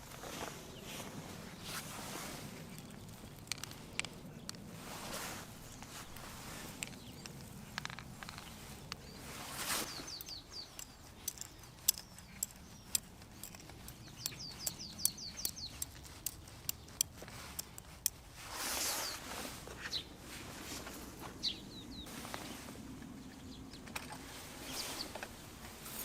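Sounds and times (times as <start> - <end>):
bird chirping: 2.7 - 17.9, 18.8 - 20.2, 21.4 - 25.5.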